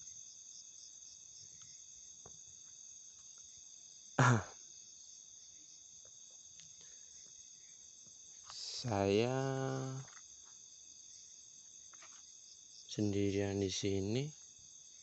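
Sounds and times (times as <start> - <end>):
crickets chirping: 0.0 - 15.0
person making short voiced sound: 4.2 - 4.5, 8.6 - 10.1.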